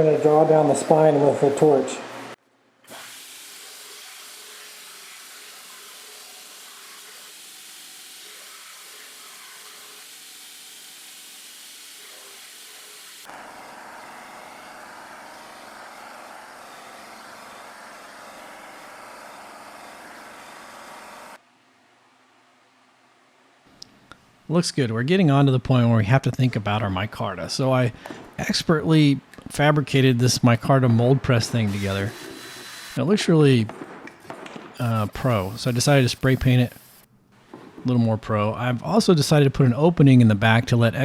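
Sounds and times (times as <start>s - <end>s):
gas torch hissing: 31.6s - 33.0s, 34.8s - 37.1s.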